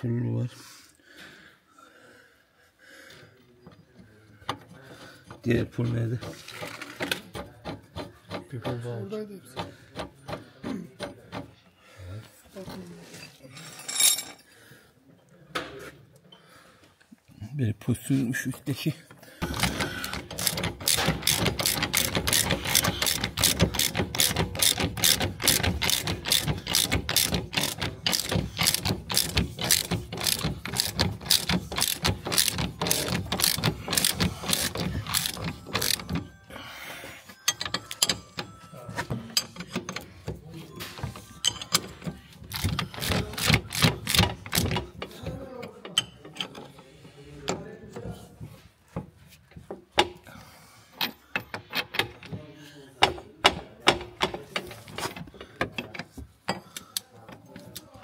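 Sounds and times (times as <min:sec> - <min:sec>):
ratchet wrench clicking: 0:19.4 - 0:36.3, 0:42.5 - 0:45.0.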